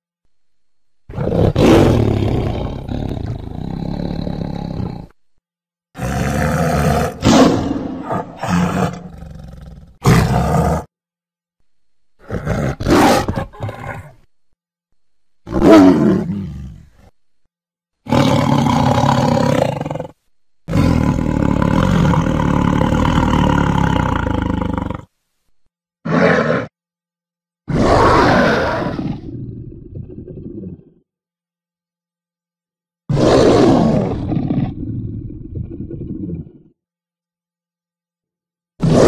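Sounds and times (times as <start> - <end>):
synthetic dinosaur roars: 1.1 - 5.2, 6.0 - 10.9, 18.0 - 25.1, 26.1 - 26.8, 27.7 - 31.0, 33.1 - 36.8, 38.8 - 39.0.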